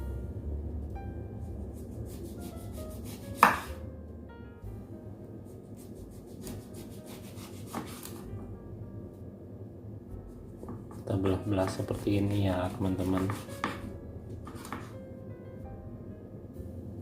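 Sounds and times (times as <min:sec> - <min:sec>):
knife knocking on board: 0:03.4 - 0:03.7, 0:13.1 - 0:13.9.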